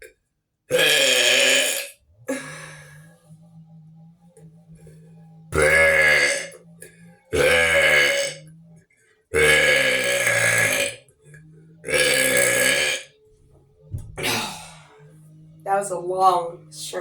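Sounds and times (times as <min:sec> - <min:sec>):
person burping loudly: 0:00.7 - 0:03.0, 0:05.5 - 0:08.5, 0:09.3 - 0:11.0, 0:11.8 - 0:13.1, 0:14.0 - 0:15.1.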